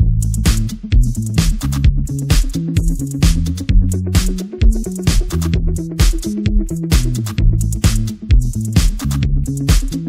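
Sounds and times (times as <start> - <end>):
electronic dance music: 0.0 - 10.0.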